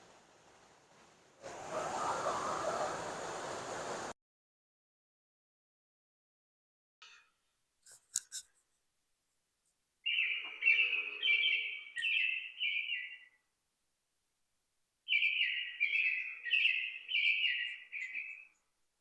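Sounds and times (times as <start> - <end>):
bird calling harsh notes: 10.0 - 13.4, 15.1 - 18.6.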